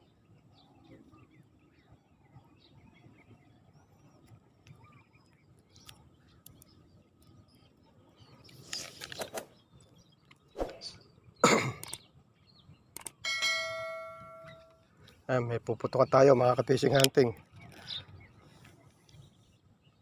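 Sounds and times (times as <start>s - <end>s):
person coughing: 11.4s - 11.8s.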